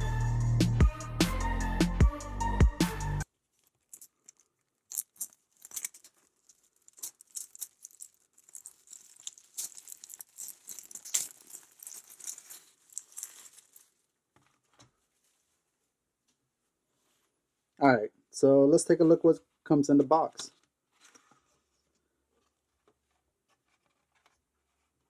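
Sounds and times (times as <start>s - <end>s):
packaging crinkling and rustling: 3.3s - 15.6s, 20.5s - 25.0s.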